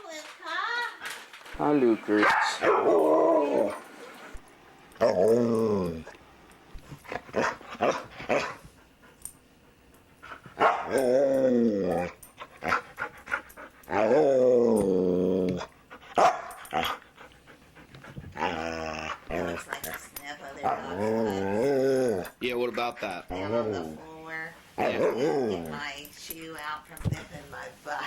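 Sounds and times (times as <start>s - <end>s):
dog groaning calls: 10.8s - 12.8s, 13.9s - 15.7s, 18.4s - 19.6s, 20.6s - 22.4s.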